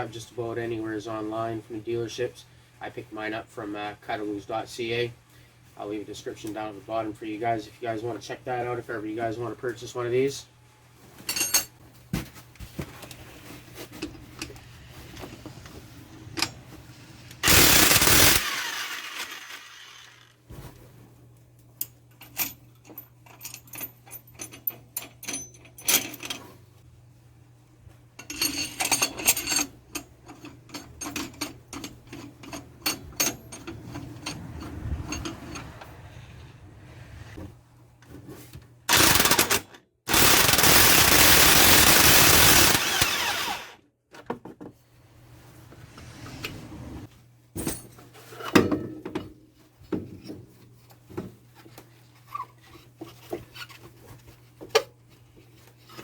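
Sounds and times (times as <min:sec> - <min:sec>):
metal tools clinking: 0:11.3 - 0:11.8, 0:21.8 - 0:26.5, 0:28.2 - 0:35.8
impact wrench bursts: 0:17.4 - 0:20.4, 0:38.9 - 0:43.8.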